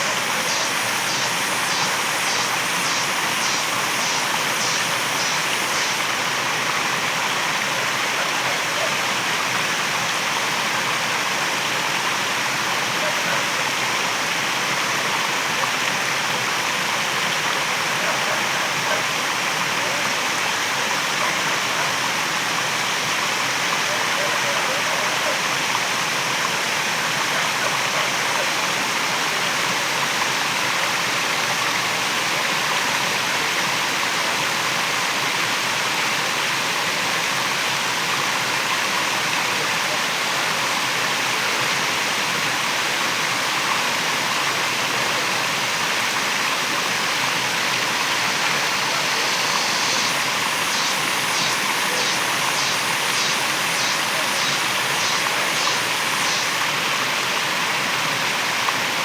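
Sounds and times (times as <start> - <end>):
faint high rhythmic pulsing: 0.0 - 6.1
waterfall rushing: 0.0 - 12.9, 46.2 - 59.0.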